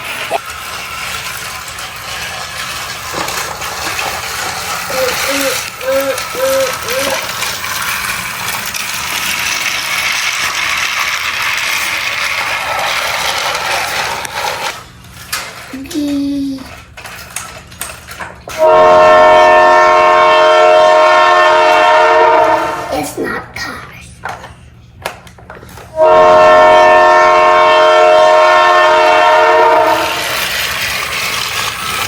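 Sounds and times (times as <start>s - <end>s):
toy train rattling: 0.0s - 21.8s, 22.6s - 32.0s
electronic train whistle: 4.9s - 7.4s, 18.5s - 22.9s, 26.0s - 30.5s.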